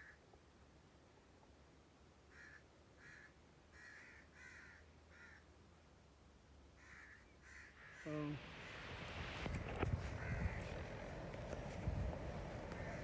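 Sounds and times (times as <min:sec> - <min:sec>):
crow cawing faintly: 0:00.0 - 0:00.2, 0:02.3 - 0:05.5, 0:06.8 - 0:13.0.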